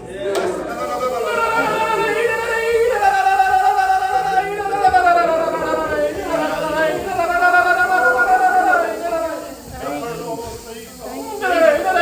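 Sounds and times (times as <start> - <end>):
high voice singing long notes: 0.7 - 9.7.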